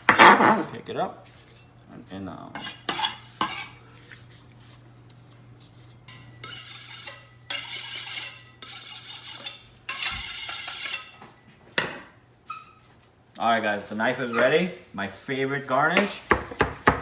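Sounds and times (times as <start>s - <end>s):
knife scraping along sharpener: 5.2s - 11.2s.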